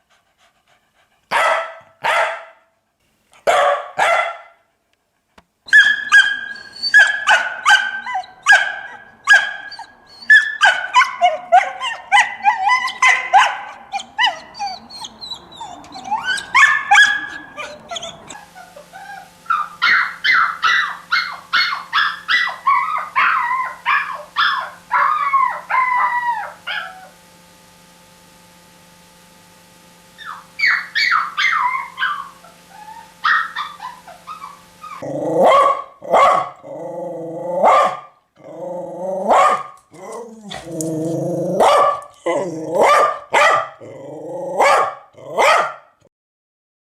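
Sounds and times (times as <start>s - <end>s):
dogs barking: 1.3s - 2.6s, 3.4s - 4.6s, 5.7s - 27.0s, 30.2s - 36.7s, 37.6s - 38.2s, 39.2s - 43.9s, 44.6s - 45.9s
steady low hum: 4.7s - 45.6s.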